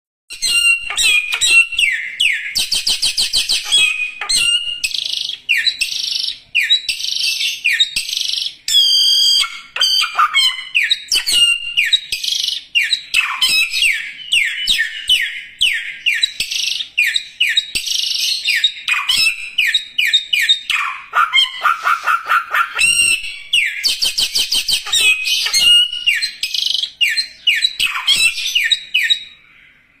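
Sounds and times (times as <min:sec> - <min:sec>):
songbird chirping and trilling: 0:00.3 - 0:30.0.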